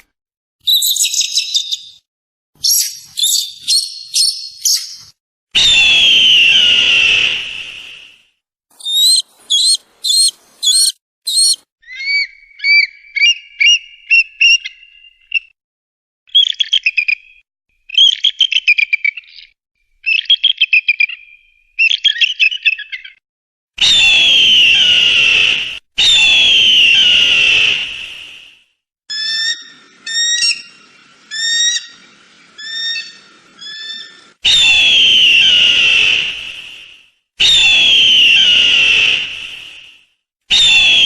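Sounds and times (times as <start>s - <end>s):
eagle calls and screams: 0.6s - 2.0s, 2.6s - 7.5s, 8.8s - 15.5s, 23.8s - 28.3s, 29.1s - 39.8s, 40.5s - 41.0s.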